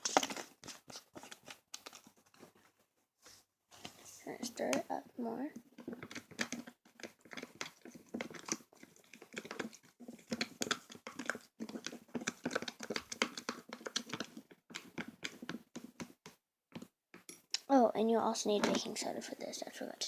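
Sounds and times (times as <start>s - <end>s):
wet clicks of stirred paste: 5.8s - 15.5s.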